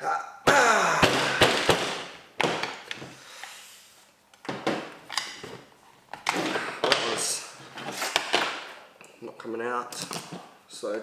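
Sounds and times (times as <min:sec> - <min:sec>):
handling rustles: 0:01.4 - 0:08.8.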